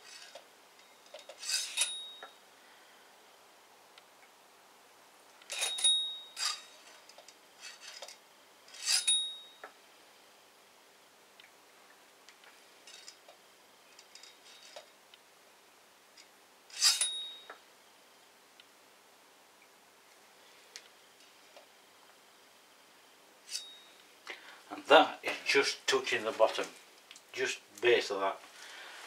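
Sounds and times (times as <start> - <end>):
tape measure clinking on metal tube: 0.0 - 2.4, 5.4 - 9.7, 16.2 - 17.6, 23.4 - 23.9.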